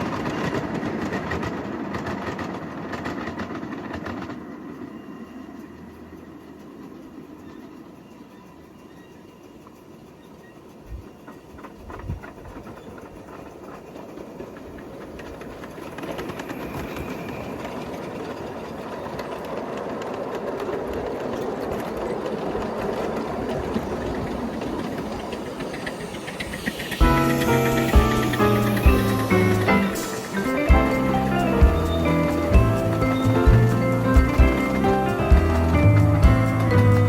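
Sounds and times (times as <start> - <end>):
train rumbling on rails: 0.0 - 37.0
music: 26.9 - 37.0.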